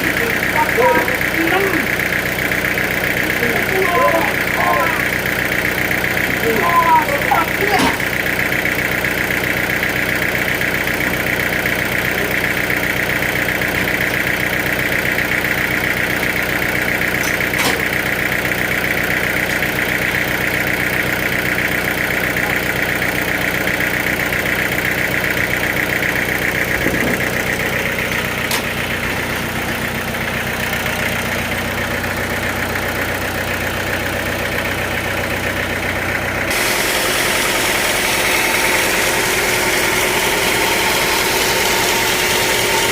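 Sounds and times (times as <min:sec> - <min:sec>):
machine whine: 0:00.0 - 0:14.3, 0:36.5 - 0:42.9
sawmill machinery hum: 0:00.0 - 0:42.9.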